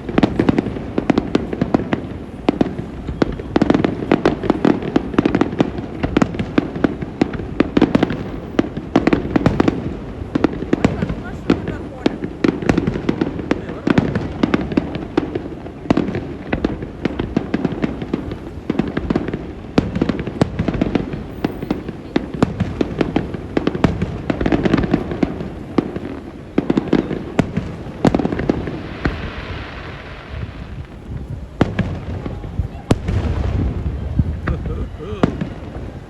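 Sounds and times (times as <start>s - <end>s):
firework bangs and pops: 0.0s - 36.0s
deep rolling booms: 22.2s - 36.0s.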